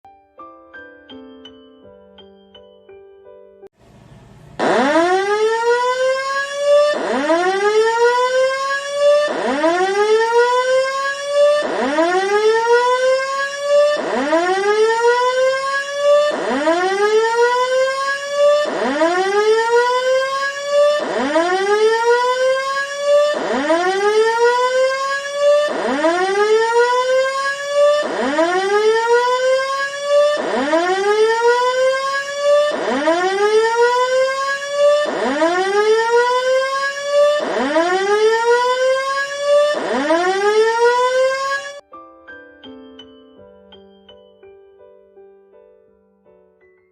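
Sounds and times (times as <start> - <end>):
electronic fire alarm siren: 4.6 - 41.8.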